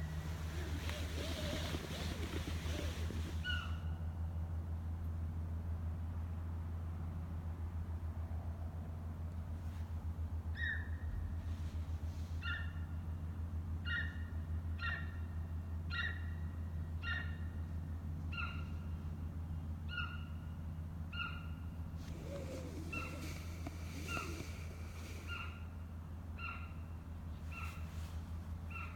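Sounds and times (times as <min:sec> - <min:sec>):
deer high-pitched calls: 0:00.0 - 0:03.9, 0:21.1 - 0:25.7
low hum: 0:00.0 - 0:05.9, 0:21.7 - 0:28.8.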